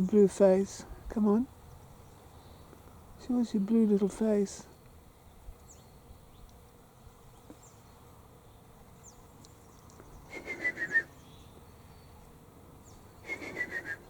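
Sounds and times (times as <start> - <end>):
person whistling descending notes: 10.5 - 11.1.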